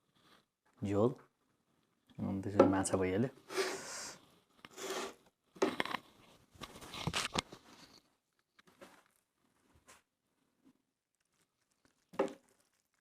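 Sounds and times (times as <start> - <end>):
person eating noisily: 11.1 - 13.0.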